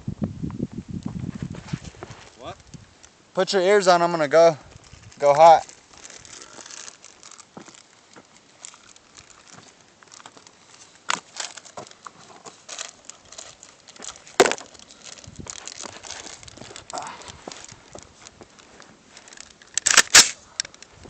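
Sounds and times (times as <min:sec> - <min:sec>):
rustling handling noise: 0:04.6 - 0:21.0.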